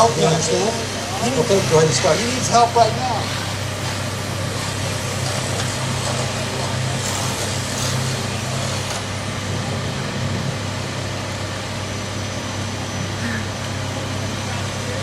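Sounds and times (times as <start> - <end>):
large vehicle engine idling: 0.0 - 15.0
outdoor background noise: 0.0 - 15.0.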